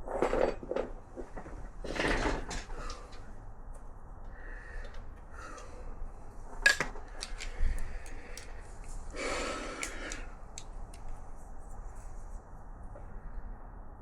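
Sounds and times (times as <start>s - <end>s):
heavy breath out: 4.3s - 6.1s, 7.4s - 10.4s
hand tools clicking on metal: 6.7s - 11.1s.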